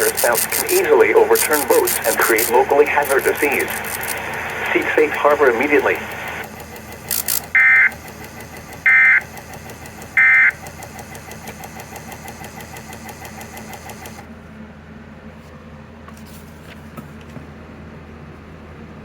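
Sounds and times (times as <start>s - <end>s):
short data tone bursts: 0.0s - 6.4s, 7.1s - 8.0s, 8.8s - 10.7s
radio hiss: 0.0s - 8.0s.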